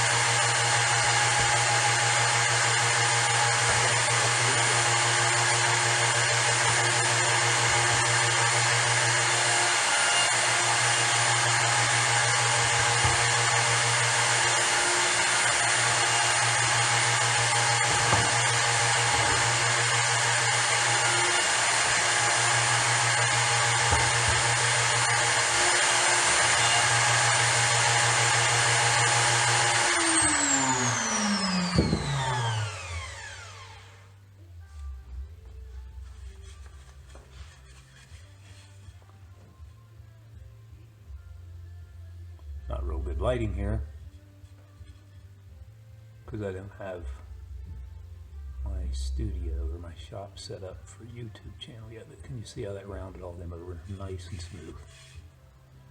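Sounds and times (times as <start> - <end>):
router high whine: 0.0 - 34.2.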